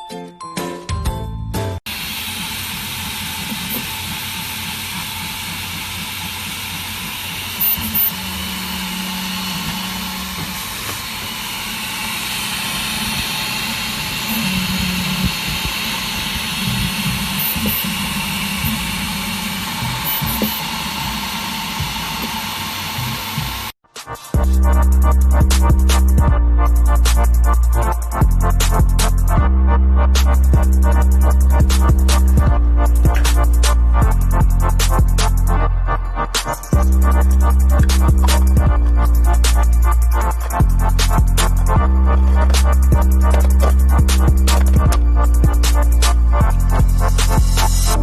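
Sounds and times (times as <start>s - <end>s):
printer motor tones: 1.9s - 23.8s, 36.8s - 47.8s.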